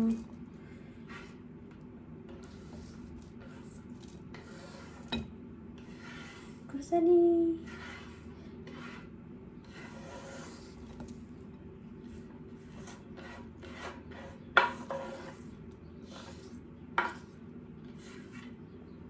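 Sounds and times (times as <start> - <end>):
spoon scraping a bowl: 1.0 - 1.4, 2.3 - 6.7, 7.6 - 11.2, 12.0 - 18.6.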